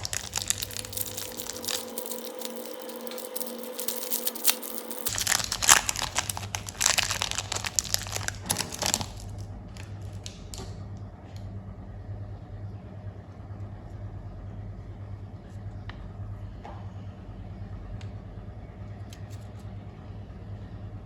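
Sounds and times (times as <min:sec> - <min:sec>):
candy wrappers crinkling and tearing: 0:00.0 - 0:10.7.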